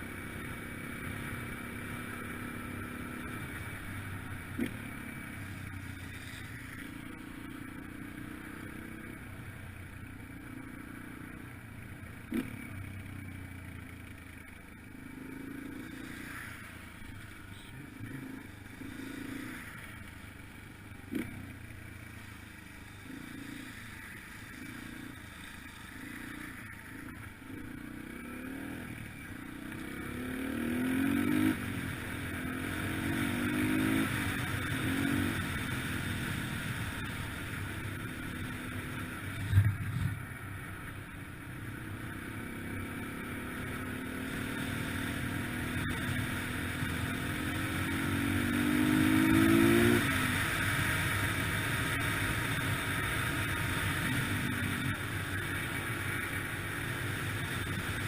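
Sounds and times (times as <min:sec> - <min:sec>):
dirt bike engine revving: 0:42.5 - 0:54.9.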